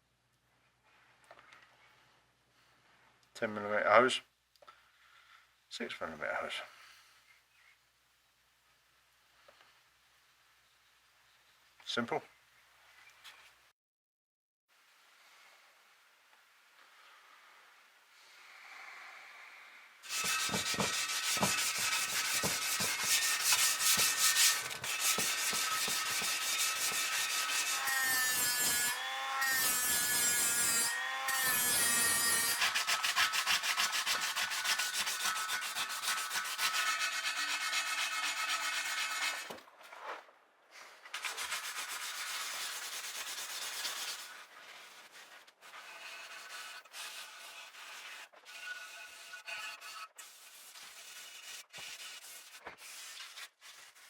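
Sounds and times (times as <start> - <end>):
abrasive rasping on workpiece: 20.0 - 39.5, 45.7 - 52.5.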